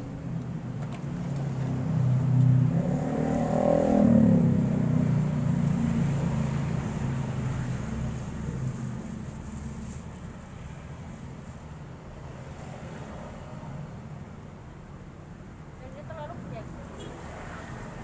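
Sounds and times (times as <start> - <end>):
vehicle engine passing by: 1.2 - 8.5.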